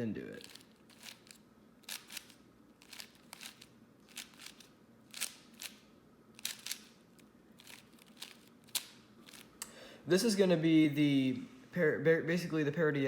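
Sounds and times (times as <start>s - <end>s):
puzzle cube clicking turns: 0.4s - 5.8s, 6.4s - 7.0s, 7.6s - 9.5s.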